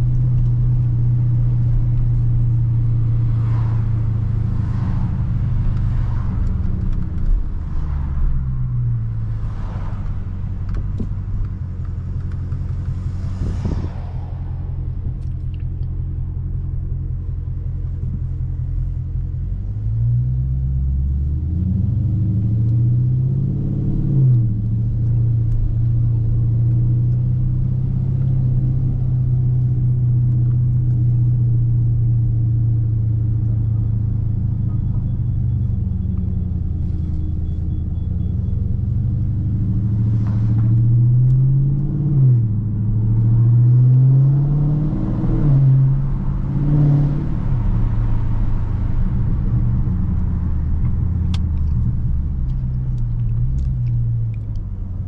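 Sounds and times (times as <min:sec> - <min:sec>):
car engine revving: 0:00.0 - 0:18.2, 0:35.7 - 0:54.9.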